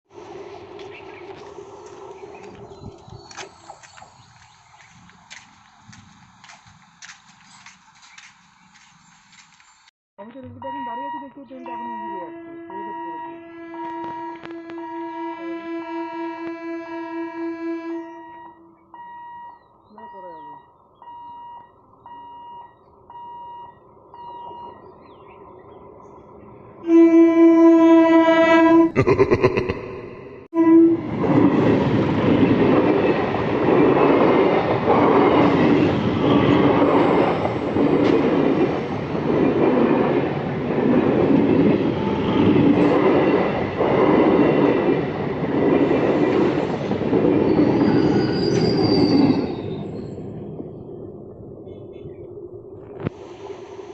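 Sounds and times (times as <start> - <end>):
faint repeating beeps: 10.4 - 14.4, 18.2 - 24.8
train horn blast: 12.0 - 18.8, 26.8 - 29.0, 30.6 - 31.2.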